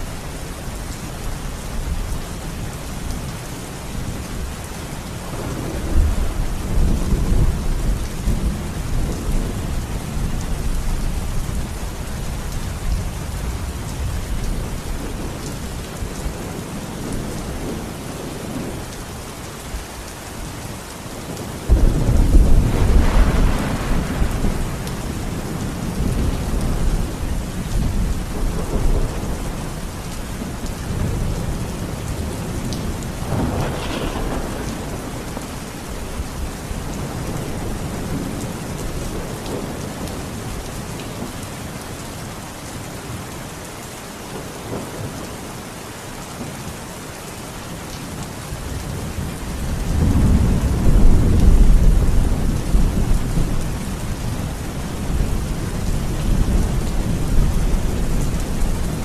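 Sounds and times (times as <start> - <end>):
heavy rain: 0.0 - 59.0
rolling thunder: 5.2 - 11.6, 21.7 - 29.8, 30.4 - 40.1, 49.0 - 59.0.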